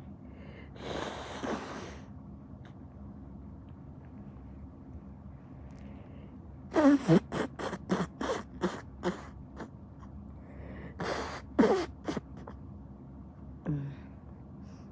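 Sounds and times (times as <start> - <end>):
person blowing congested nose: 0.8 - 2.0, 6.7 - 9.3, 10.9 - 12.5.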